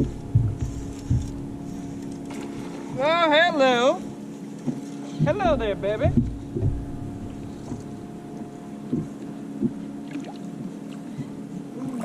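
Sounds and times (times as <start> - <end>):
soft knocks: 0.0 - 1.5, 4.6 - 8.0
trolling motor electric hum: 0.0 - 12.0.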